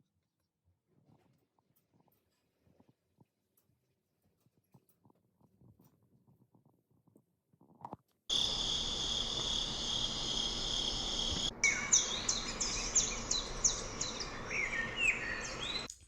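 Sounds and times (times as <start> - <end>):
birds singing high chirps: 8.3 - 15.9
crickets chirping: 8.3 - 15.9.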